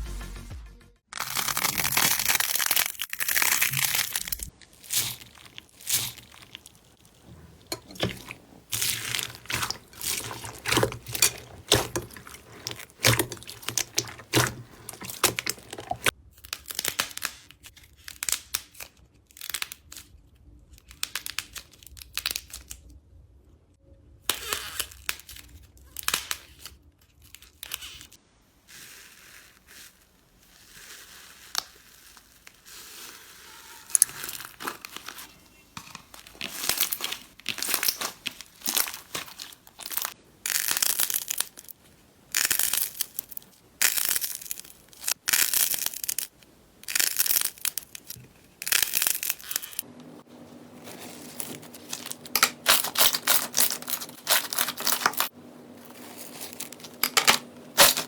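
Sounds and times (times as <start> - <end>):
slime squishing and crackling: 1.2 - 20.1, 29.2 - 49.9, 50.8 - 55.3, 55.9 - 58.0.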